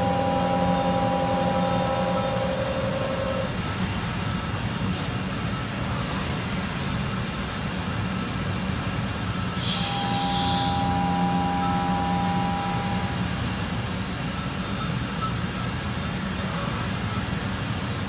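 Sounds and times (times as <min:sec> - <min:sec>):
high wavering squeal: 0:00.0 - 0:03.6, 0:09.4 - 0:16.6
steady machine whine: 0:00.0 - 0:04.1, 0:09.3 - 0:15.7
machine mechanical hum: 0:00.0 - 0:18.0.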